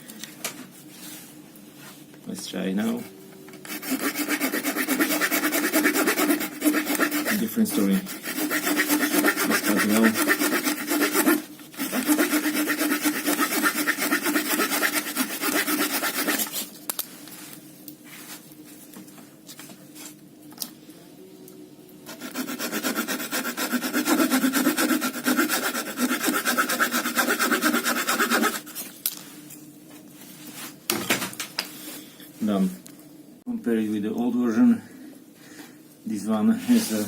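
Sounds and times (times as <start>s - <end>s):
folding saw sawing through wood: 3.7s - 16.5s, 22.2s - 28.6s.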